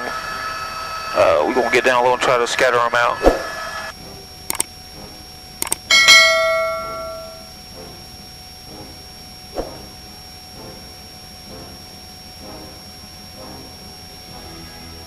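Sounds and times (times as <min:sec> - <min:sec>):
quick clicks: 0:04.5 - 0:04.7, 0:05.6 - 0:05.9
bell-like ding: 0:05.9 - 0:07.5.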